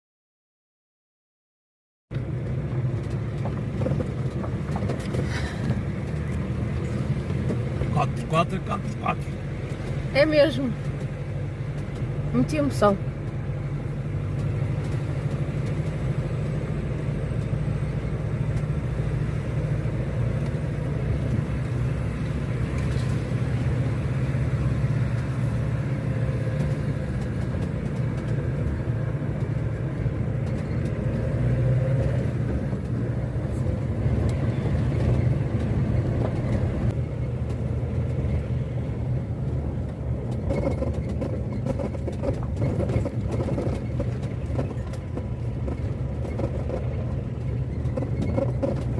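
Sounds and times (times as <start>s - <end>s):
engine and tyre rumble: 2.1s - 48.9s
knocks and rattles: 2.8s - 8.1s, 40.2s - 48.9s.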